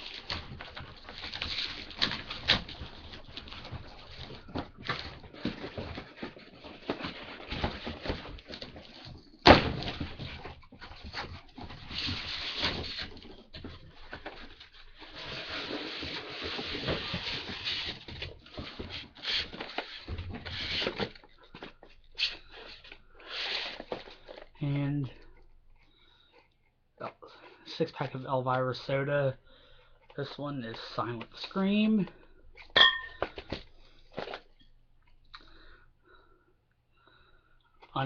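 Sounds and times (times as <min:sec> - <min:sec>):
packaging rustling: 0:00.0 - 0:26.4.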